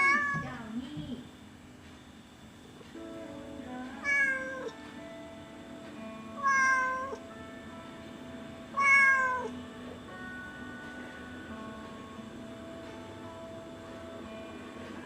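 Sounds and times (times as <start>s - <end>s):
cat meowing: 0.0s - 0.5s, 4.0s - 4.8s, 6.4s - 7.2s, 8.8s - 9.6s.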